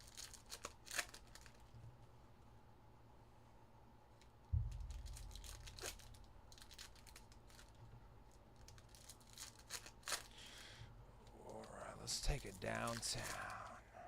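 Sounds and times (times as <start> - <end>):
card wrappers crinkling and tearing: 0.0 - 1.7, 4.9 - 10.5, 11.2 - 13.8
dull thump: 4.5 - 5.2.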